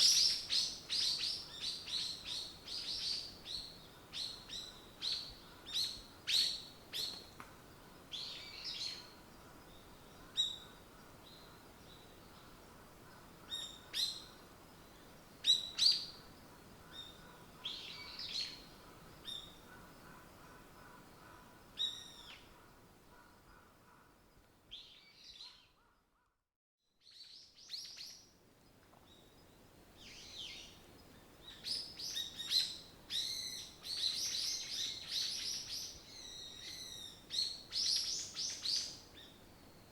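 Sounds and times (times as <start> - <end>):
songbirds chirping: 27.1 - 39.9.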